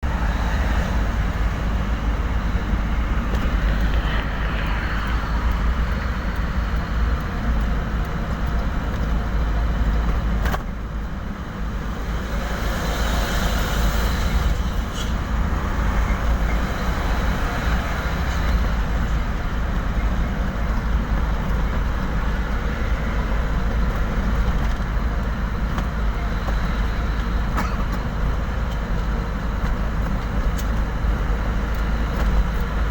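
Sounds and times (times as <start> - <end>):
road traffic rumble: 0.0 - 32.9.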